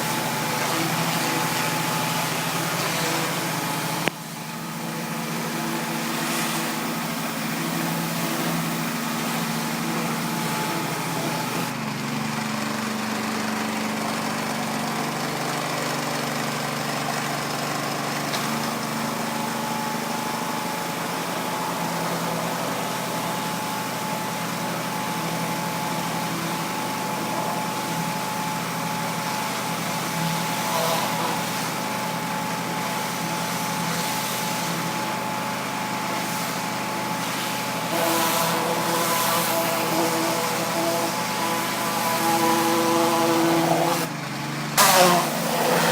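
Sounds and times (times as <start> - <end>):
hiss of water spray: 0.0 - 11.7, 29.6 - 44.1
small engine running: 0.0 - 45.9.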